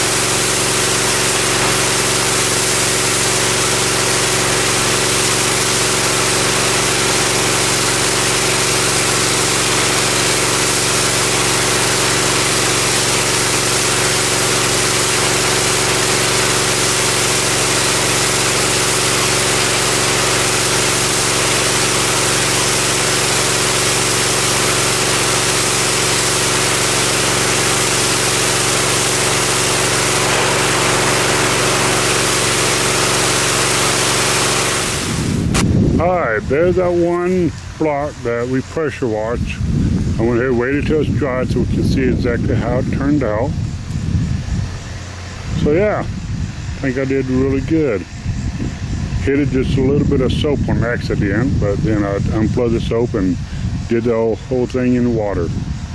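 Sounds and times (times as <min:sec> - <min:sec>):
water spray hissing on concrete: 0:00.0 - 0:39.0
pressure washer engine running: 0:00.0 - 0:55.9.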